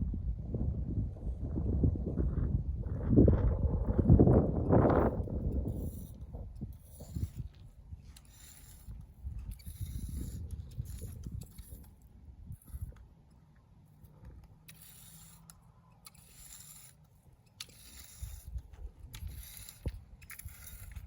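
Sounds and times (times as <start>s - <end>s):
wind rumble on microphone: 0.0s - 13.1s, 17.9s - 21.0s
scraping and rustling in dry weeds: 3.8s - 13.2s, 14.0s - 21.0s.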